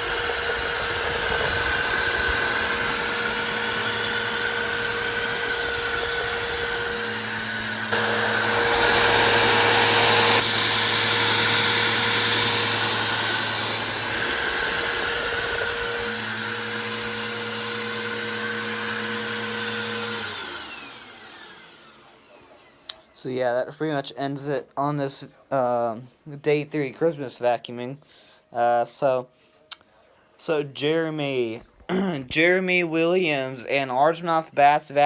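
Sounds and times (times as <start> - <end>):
vacuum cleaner running: 0.0 - 22.8
vacuum motor winding down: 0.0 - 22.8.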